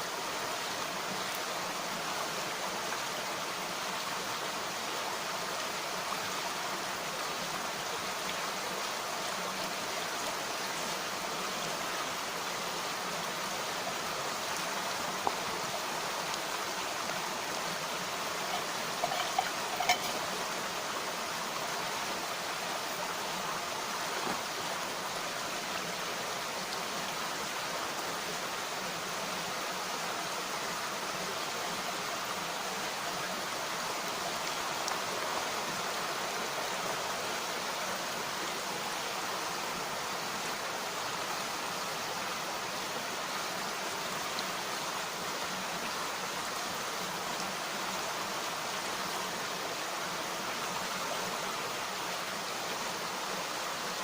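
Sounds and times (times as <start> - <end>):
stream flowing over rocks: 0.0 - 54.0
faint ticks: 18.4 - 20.2.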